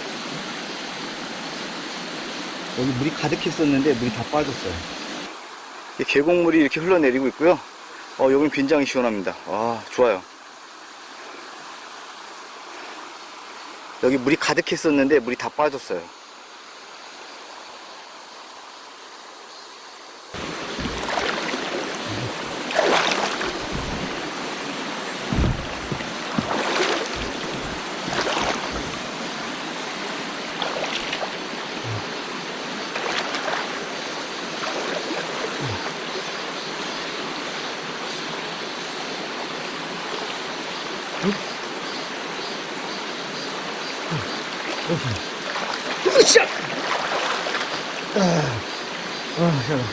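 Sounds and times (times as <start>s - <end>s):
stream rushing over rocks: 0.0s - 16.5s, 20.3s - 37.0s, 39.9s - 49.9s
brief water splashes: 20.4s - 24.3s, 25.3s - 29.0s.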